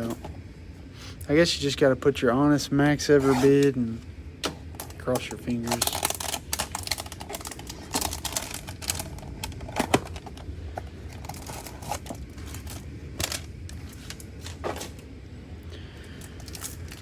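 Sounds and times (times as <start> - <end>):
wrappers rustling: 4.8 - 10.5, 11.1 - 15.1, 16.1 - 17.0.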